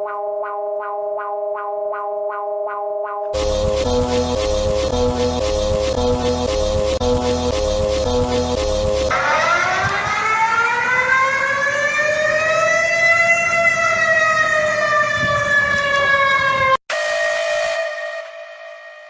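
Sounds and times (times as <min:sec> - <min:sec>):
steady alarm tone: 0:00.0 - 0:09.6, 0:16.9 - 0:19.0
electronic siren wailing: 0:00.0 - 0:12.9, 0:13.7 - 0:19.0.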